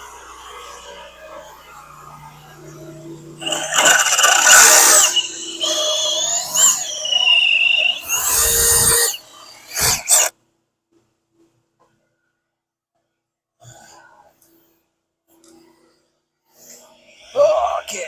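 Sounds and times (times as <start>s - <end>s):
power tool high whine: 0.0s - 10.3s.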